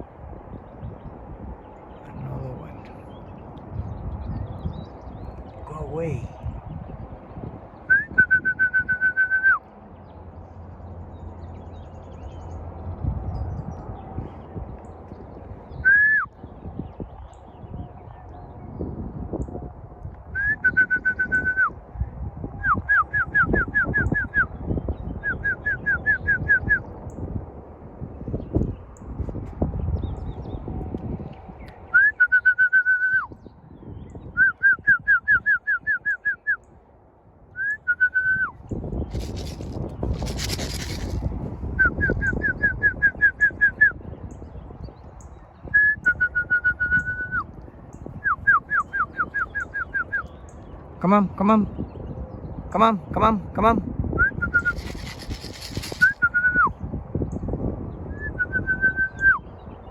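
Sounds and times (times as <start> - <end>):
wind rumble: 0.0 - 51.0, 51.7 - 59.9
person whistling: 15.9 - 16.2, 54.2 - 54.8
quick whistled notes: 39.1 - 41.2, 54.3 - 56.7.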